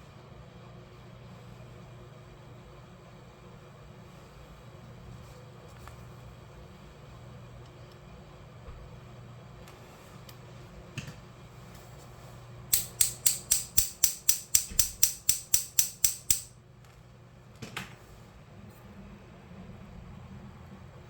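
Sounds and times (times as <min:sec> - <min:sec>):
sharp mechanical clicks: 0:12.7 - 0:16.5.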